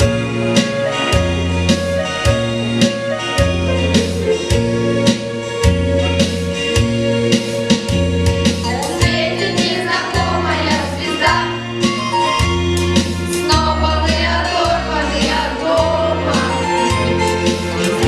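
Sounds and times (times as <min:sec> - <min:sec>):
song with steady beat and bass: 0:00.0 - 0:18.0
people singing: 0:08.7 - 0:11.7, 0:13.4 - 0:18.0.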